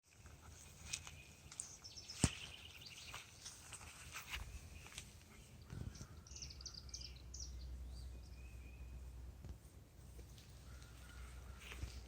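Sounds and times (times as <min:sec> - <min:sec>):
small bird chirping: 0:00.6 - 0:09.1
low outdoor rumble: 0:03.3 - 0:12.0.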